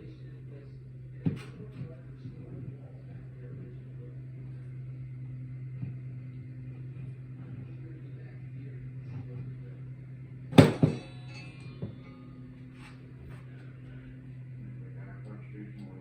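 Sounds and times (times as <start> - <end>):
steady low hum: 0.0 - 16.0
sharp knocks with ringing: 10.6 - 12.3.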